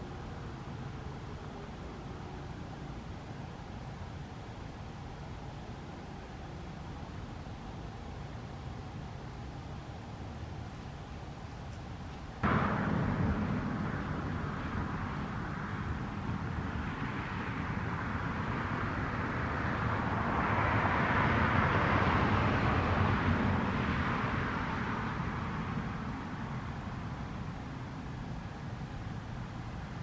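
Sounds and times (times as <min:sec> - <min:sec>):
motor vehicle passing: 0:12.4 - 0:26.4.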